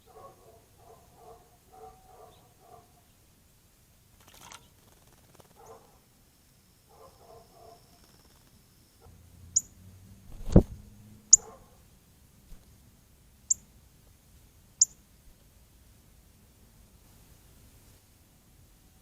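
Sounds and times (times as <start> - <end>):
dull thump: 10.4 - 10.8.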